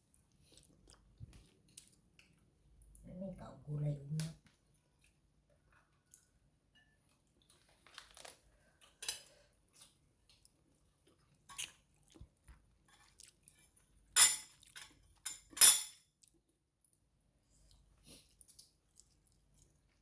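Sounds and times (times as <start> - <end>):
chewing: 0.0 - 3.0, 9.7 - 13.9, 16.1 - 20.0
cutlery clinking on plates: 8.9 - 9.4, 14.2 - 16.1.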